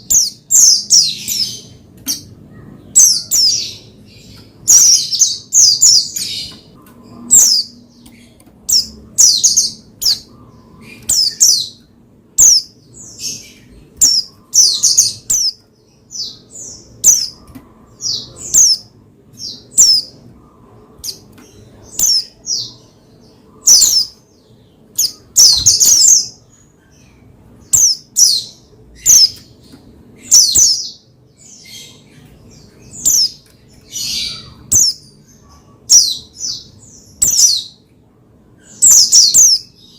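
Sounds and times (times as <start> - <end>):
bird chirping: 0.0 - 39.9.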